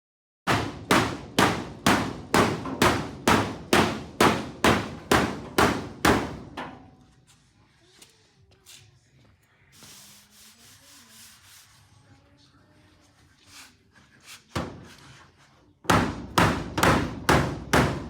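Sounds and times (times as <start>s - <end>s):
hammer striking sheet metal: 0.5s - 6.9s, 15.9s - 18.0s.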